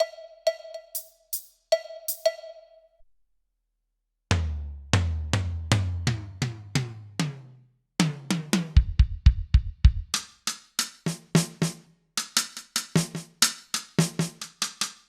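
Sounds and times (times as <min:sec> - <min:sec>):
kick drums: 0:08.8 - 0:10.1.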